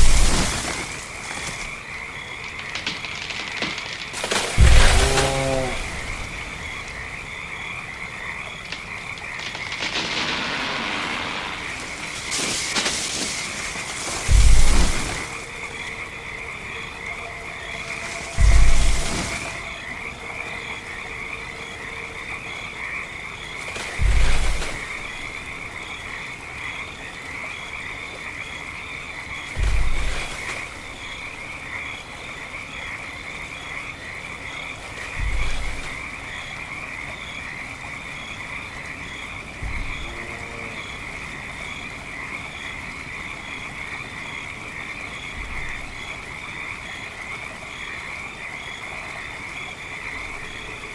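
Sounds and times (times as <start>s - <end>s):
heavy booming footsteps: 0.0s - 1.9s, 2.6s - 7.3s, 8.6s - 15.9s, 17.6s - 19.7s, 23.8s - 25.0s, 35.2s - 35.9s
frogs croaking: 0.0s - 50.9s.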